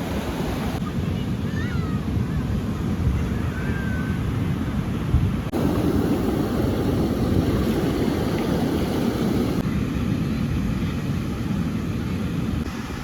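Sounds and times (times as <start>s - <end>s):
low rumbling outdoor noise: 5.4s - 12.8s.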